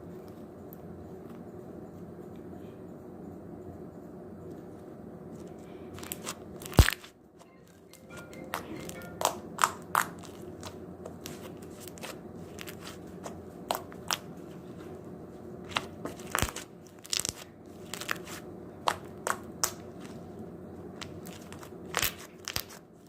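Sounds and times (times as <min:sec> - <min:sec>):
slime clicking and popping: 0:09.2 - 0:10.7.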